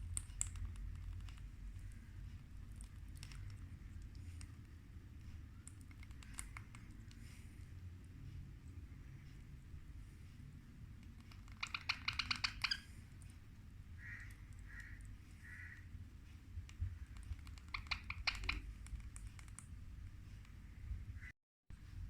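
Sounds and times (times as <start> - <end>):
soft parrot chirps: 11.2 - 13.0, 17.4 - 18.7
baby parrot chattering: 11.3 - 12.9, 17.4 - 18.7.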